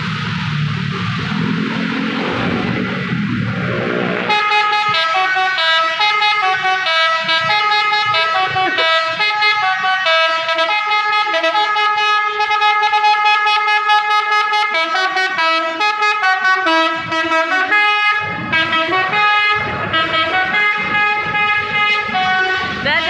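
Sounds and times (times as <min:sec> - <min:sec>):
low rumble: 0:00.0 - 0:05.0, 0:18.2 - 0:23.0
multi-tone bus air horn tune: 0:03.9 - 0:23.0.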